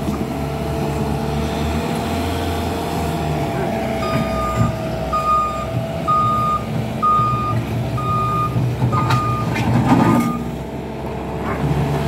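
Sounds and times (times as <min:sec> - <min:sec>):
diesel engine running: 0:00.0 - 0:12.0
backup alarm beeping: 0:04.0 - 0:09.6, 0:10.2 - 0:10.5.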